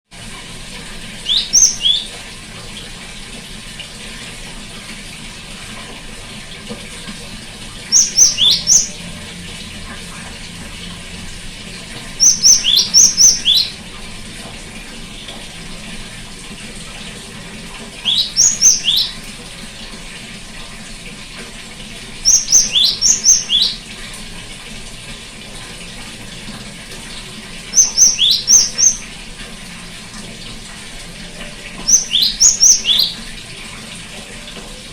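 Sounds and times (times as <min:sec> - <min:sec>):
great tit calling: 0:01.2 - 0:02.1, 0:07.9 - 0:09.0, 0:12.2 - 0:13.8, 0:18.0 - 0:19.2, 0:22.2 - 0:23.8, 0:27.8 - 0:29.1, 0:31.8 - 0:33.2.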